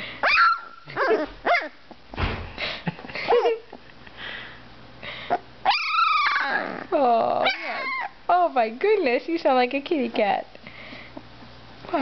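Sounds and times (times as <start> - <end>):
puppy yipping: 0.2 - 1.8, 5.6 - 6.8, 7.4 - 8.2.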